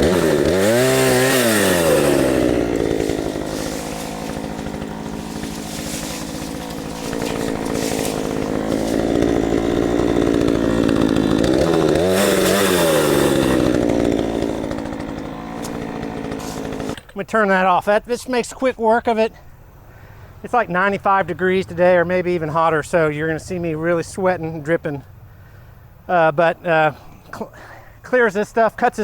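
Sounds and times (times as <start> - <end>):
chainsaw running under throttle: 0.0 - 17.1.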